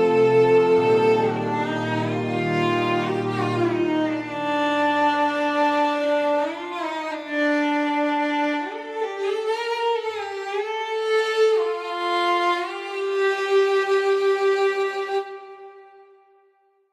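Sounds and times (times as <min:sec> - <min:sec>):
low sustained bass note: 0:00.0 - 0:05.6
solo violin melody: 0:00.0 - 0:16.2.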